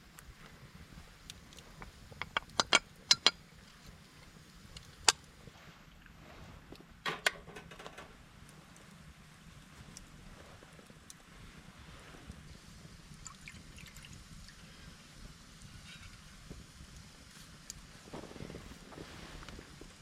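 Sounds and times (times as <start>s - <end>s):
sharp clicks and knocks: 1.8s - 3.4s, 7.0s - 8.2s.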